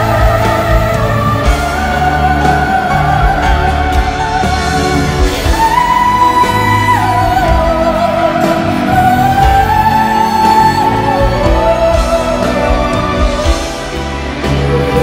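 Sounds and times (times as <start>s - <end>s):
live band playing: 0.0s - 15.0s.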